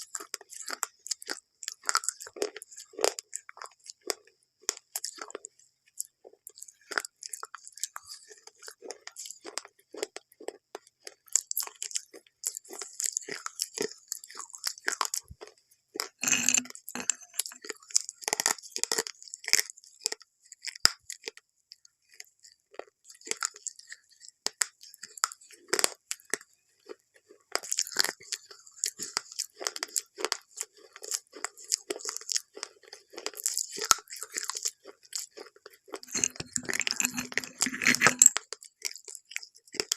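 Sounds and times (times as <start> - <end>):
chewing and crunching: 0.0 - 39.9.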